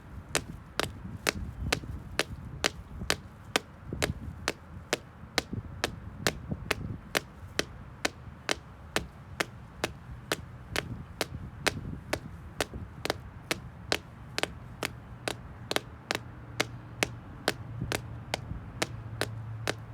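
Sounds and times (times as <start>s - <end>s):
shoe tapping on concrete: 0.3s - 19.9s.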